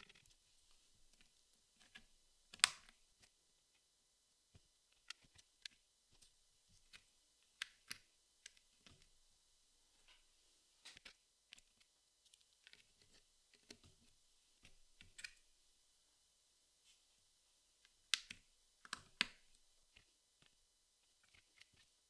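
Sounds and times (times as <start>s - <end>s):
jigsaw pieces clicking and tapping: 1.8s - 3.0s, 7.6s - 9.0s, 18.1s - 19.5s.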